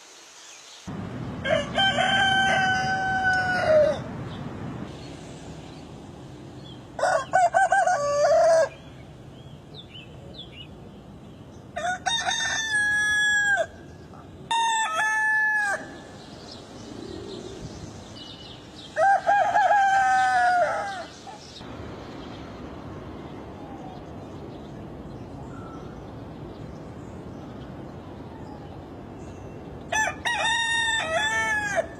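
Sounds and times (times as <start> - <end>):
rooster crowing: 1.4 - 4.1, 7.0 - 8.8, 11.8 - 13.8, 14.5 - 16.0, 19.0 - 21.2, 29.9 - 31.9.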